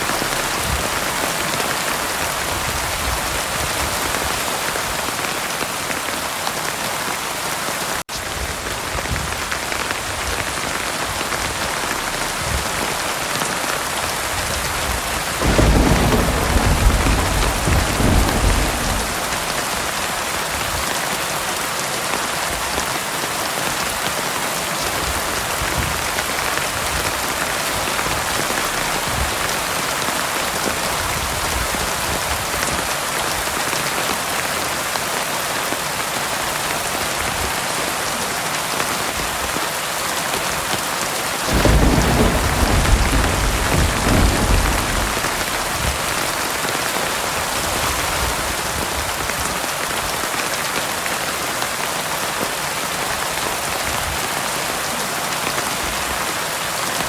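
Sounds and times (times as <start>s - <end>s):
heavy rain falling: 0.0s - 57.0s
thunder rumbling: 14.2s - 20.9s, 41.4s - 49.0s.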